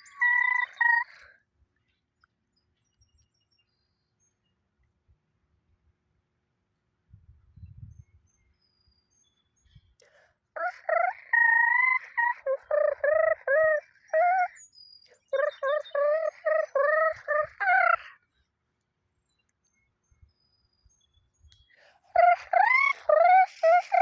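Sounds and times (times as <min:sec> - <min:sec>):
bird calling: 0:00.0 - 0:01.2, 0:10.6 - 0:14.6, 0:15.2 - 0:18.1, 0:22.2 - 0:24.0.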